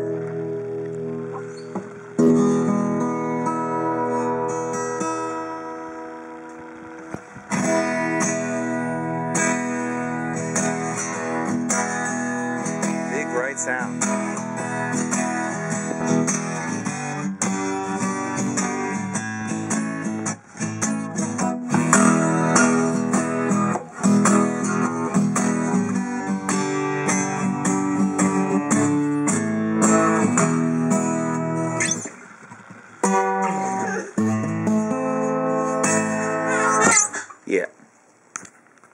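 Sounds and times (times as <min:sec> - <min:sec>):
acoustic guitar strummed and picked: 0:00.0 - 0:37.5.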